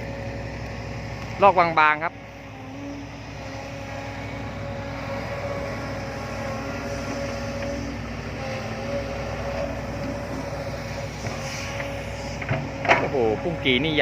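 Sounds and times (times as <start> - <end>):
diesel engine rumble: 0.0 - 14.0
wavering whine: 1.8 - 14.0.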